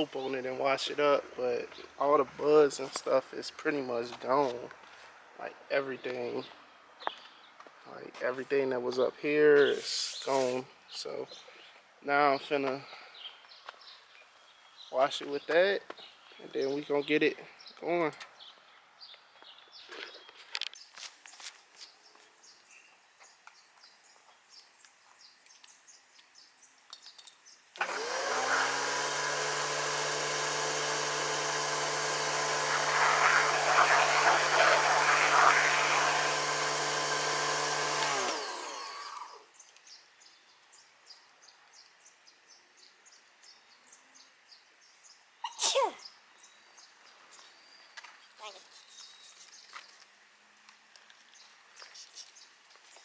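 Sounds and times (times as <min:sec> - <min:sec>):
water spray hissing: 0:09.6 - 0:10.7, 0:27.8 - 0:39.1, 0:48.4 - 0:50.0, 0:51.9 - 0:52.4
pressure washer motor running: 0:09.7 - 0:10.6, 0:27.8 - 0:39.4.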